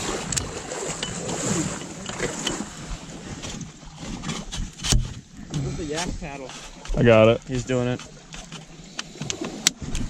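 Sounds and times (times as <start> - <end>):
kayak gear knocking and rustling: 0.0 - 10.0.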